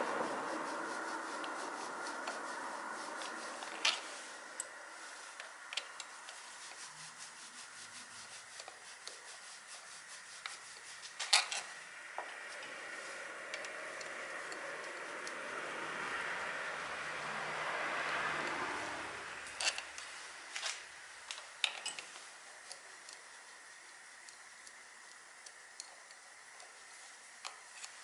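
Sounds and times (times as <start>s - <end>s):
steady rubbing: 0.0s - 20.4s.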